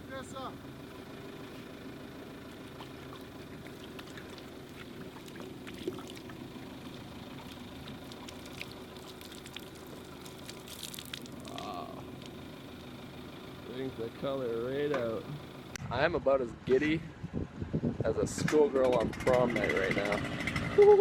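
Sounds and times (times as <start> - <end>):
low steady hum: 0.0 - 18.4
water splashing on wood: 2.7 - 12.4
water dripping: 7.3 - 12.4.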